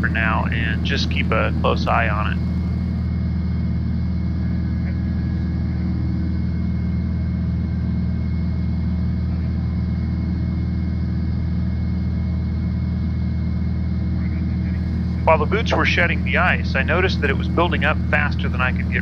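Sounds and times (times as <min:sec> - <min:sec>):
aircraft engine and propeller droning: 0:00.0 - 0:19.0.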